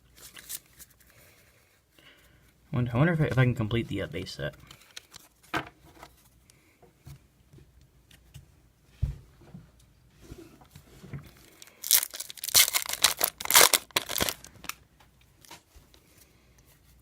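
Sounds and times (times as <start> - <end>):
wrapper being torn open: 11.6 - 14.8.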